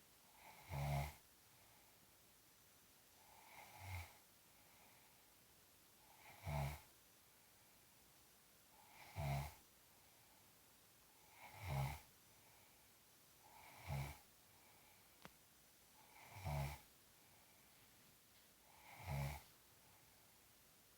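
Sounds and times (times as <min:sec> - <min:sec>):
person snoring: 0:13.5 - 0:14.2, 0:16.1 - 0:16.8, 0:18.7 - 0:19.5
faint click: 0:15.2 - 0:15.4.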